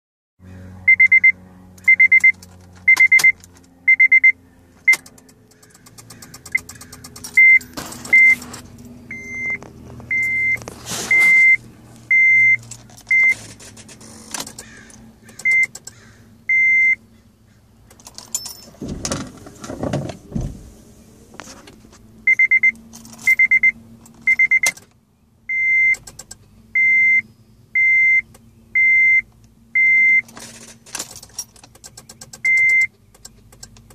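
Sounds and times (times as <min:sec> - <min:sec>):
car warning chime beeping: 0:00.9 - 0:05.2, 0:05.9 - 0:13.4, 0:15.3 - 0:17.0, 0:22.2 - 0:24.8, 0:25.5 - 0:30.3, 0:31.8 - 0:33.7.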